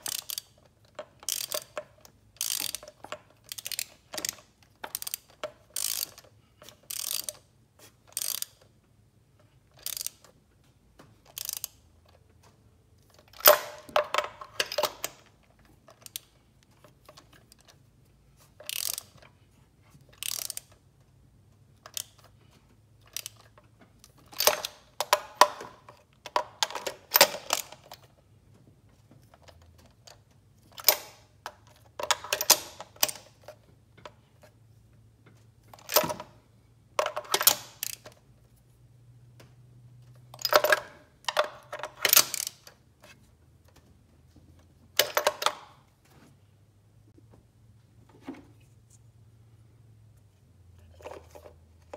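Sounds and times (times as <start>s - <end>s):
socket ratchet clicking: 0.0s - 7.5s, 8.1s - 8.7s, 9.7s - 10.3s, 11.3s - 12.0s, 15.9s - 16.4s, 18.6s - 19.2s, 20.2s - 20.8s, 21.8s - 22.3s, 23.0s - 28.0s, 37.0s - 38.2s, 40.3s - 42.7s.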